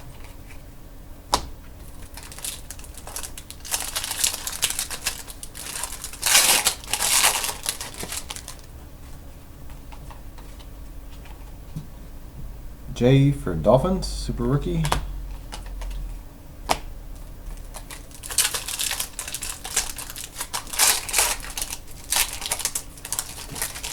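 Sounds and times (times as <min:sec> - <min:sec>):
packaging crinkling: 0:01.8 - 0:08.8, 0:17.2 - 0:23.9
cards clicking and slapping: 0:17.6 - 0:23.9.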